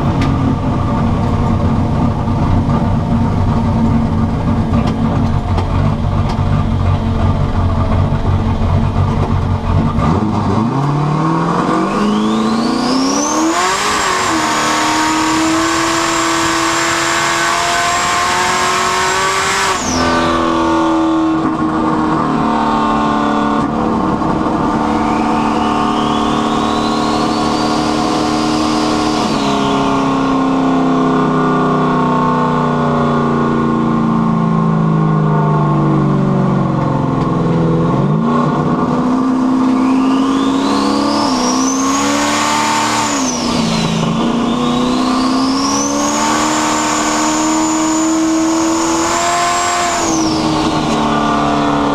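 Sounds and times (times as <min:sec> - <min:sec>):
car engine accelerating: 0:00.0 - 0:51.9
turbo whistle whine: 0:11.2 - 0:21.2, 0:24.4 - 0:30.8, 0:39.4 - 0:51.9.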